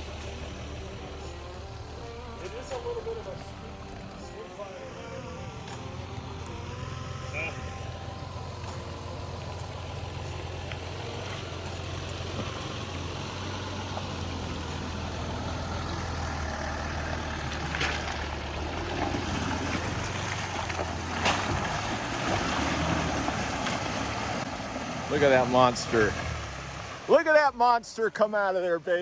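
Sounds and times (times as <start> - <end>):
off-road vehicle engine running: 0.0 - 29.0.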